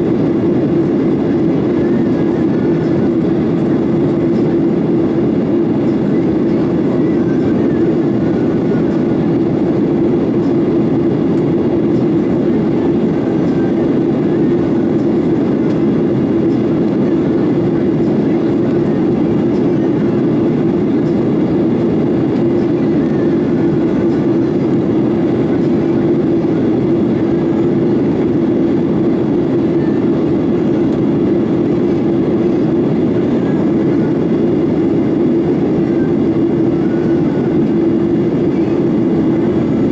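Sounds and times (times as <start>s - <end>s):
jet engine drone in cabin: 0.0s - 39.9s.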